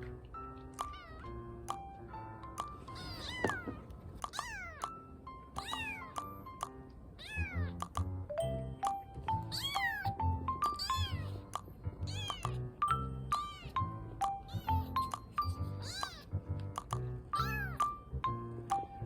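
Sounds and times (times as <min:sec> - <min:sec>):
background music: 0:00.0 - 0:19.0
kitten mewing: 0:00.8 - 0:01.4, 0:02.8 - 0:04.9, 0:05.6 - 0:06.3, 0:07.2 - 0:07.9, 0:09.5 - 0:12.6, 0:13.4 - 0:13.8, 0:14.4 - 0:15.1, 0:15.7 - 0:16.3, 0:17.4 - 0:17.8.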